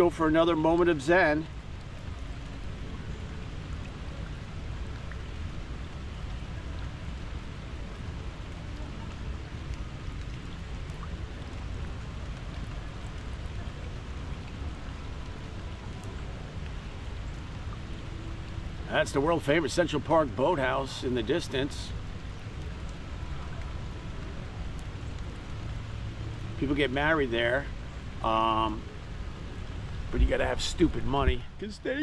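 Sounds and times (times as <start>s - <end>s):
steady rain falling: 0.0s - 32.0s.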